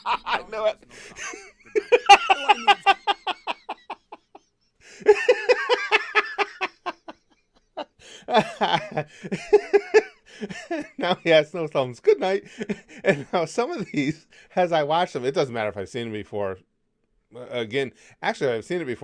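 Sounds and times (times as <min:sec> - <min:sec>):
man laughing: 0:00.0 - 0:14.2.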